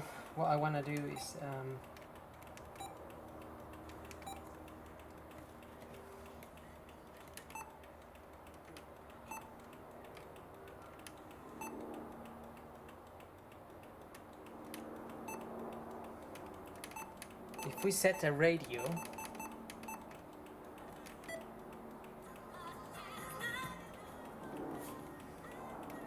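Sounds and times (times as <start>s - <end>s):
faint steady hum: 0.0s - 26.0s
car radio button beeps: 17.0s - 20.0s.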